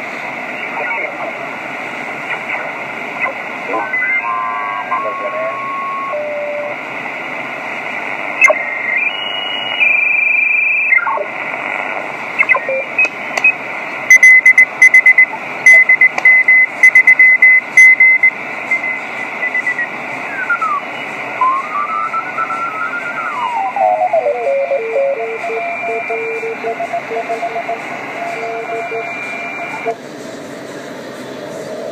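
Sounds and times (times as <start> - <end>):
radio band noise hiss: 0.0 - 31.9
heterodyne whistles: 8.4 - 11.1, 15.7 - 28.9
keyed tone pulses with clicks: 12.4 - 18.8.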